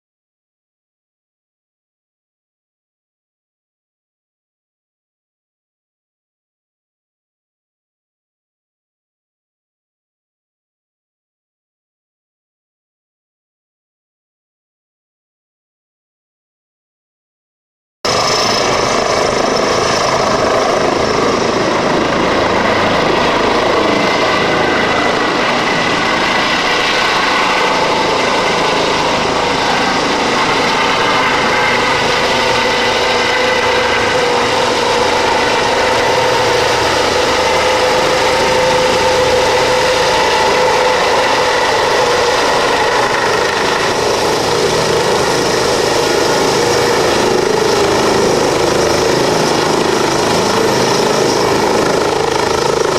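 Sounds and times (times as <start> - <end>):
helicopter turbine and rotor: 18.1 - 52.9.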